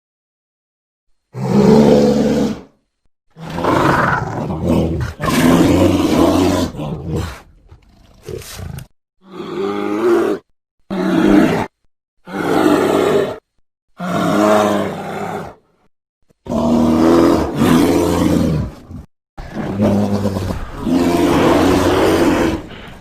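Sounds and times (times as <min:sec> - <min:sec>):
creature roars and groans: 0:03.4 - 0:07.5, 0:08.1 - 0:13.4, 0:14.0 - 0:15.6, 0:16.4 - 0:23.0.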